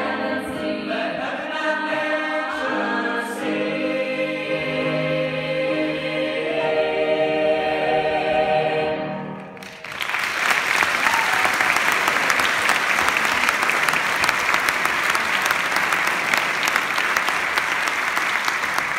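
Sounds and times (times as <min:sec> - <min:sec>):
choir singing a chord: 0:00.0 - 0:09.6
audience applause: 0:09.6 - 0:18.9.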